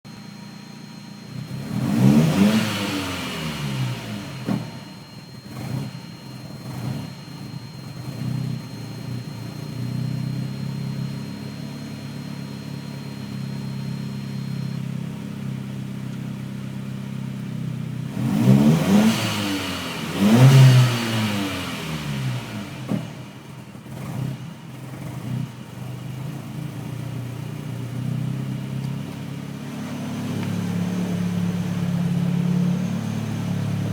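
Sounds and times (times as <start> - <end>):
engine revving: 1.2 - 14.5, 18.0 - 33.9
car engine idling roughly: 3.4 - 18.2, 21.9 - 33.9.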